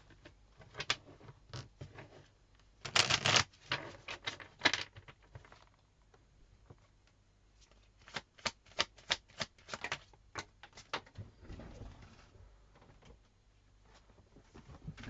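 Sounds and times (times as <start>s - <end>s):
cards being shuffled: 2.9s - 4.5s, 7.6s - 10.1s.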